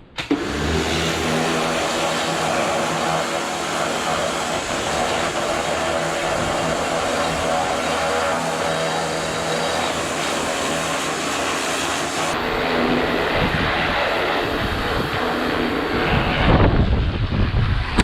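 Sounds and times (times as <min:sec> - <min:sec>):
pressure washer motor hum: 0:00.2 - 0:16.4
spray hissing: 0:00.5 - 0:14.6.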